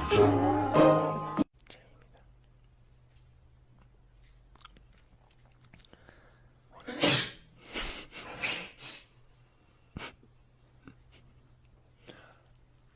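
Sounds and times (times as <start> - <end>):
person sneezing: 6.8 - 9.1.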